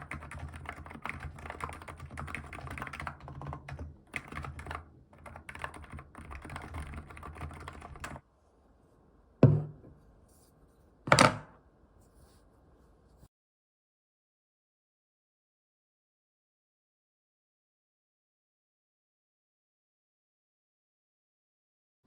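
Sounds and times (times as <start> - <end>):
typing on a computer keyboard: 0.0 - 8.2.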